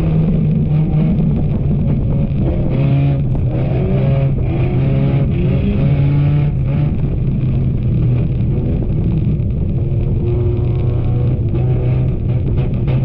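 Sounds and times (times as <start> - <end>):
race car engines revving: 0.0 - 13.0.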